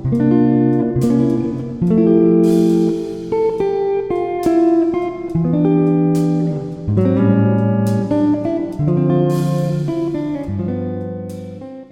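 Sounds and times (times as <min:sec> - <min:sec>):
plucked guitar: 0:00.0 - 0:11.9.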